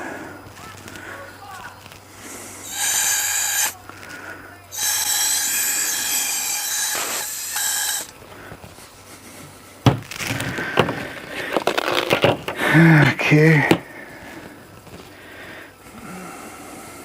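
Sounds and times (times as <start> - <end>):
air blower hissing: 0.0 - 17.0
sharp knock and clatter: 9.8 - 12.6.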